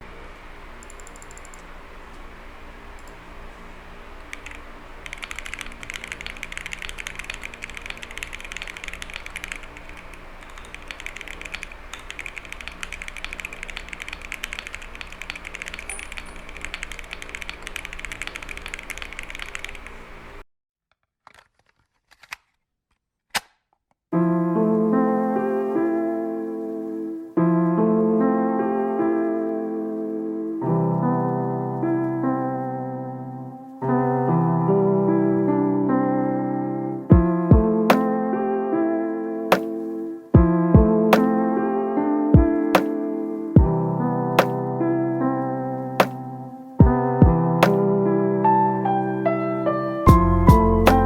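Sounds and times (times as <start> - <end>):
mechanical keyboard typing: 0.8 - 1.7, 4.3 - 20.3.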